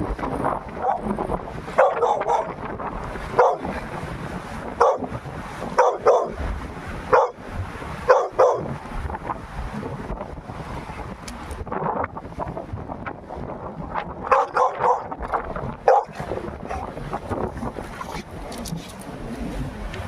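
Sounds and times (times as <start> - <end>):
wind buffeting microphone: 0.0 - 20.0
dog barking: 0.8 - 1.1, 1.8 - 2.6, 3.4 - 3.7, 4.8 - 5.1, 5.8 - 6.4, 7.1 - 7.4, 8.1 - 8.8, 14.3 - 15.2, 15.8 - 16.9.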